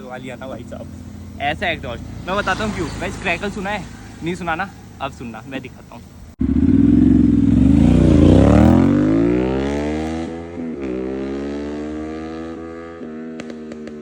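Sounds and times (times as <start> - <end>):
motorcycle engine revving: 0.0 - 5.0, 6.2 - 14.0
exhaust crackles: 0.0 - 10.9.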